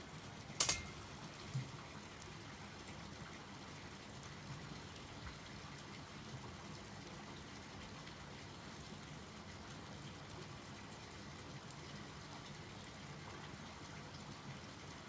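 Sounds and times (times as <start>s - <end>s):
wood fire crackling: 0.0s - 7.4s
fire popping: 0.4s - 2.2s.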